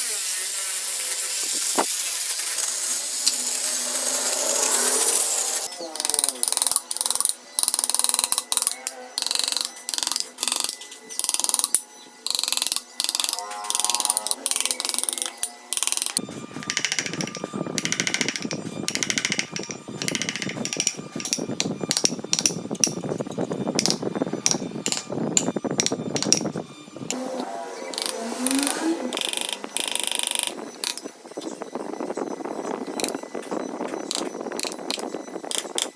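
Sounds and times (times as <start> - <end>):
woodworking tools cutting wood: 0.0 - 22.6, 27.1 - 31.1.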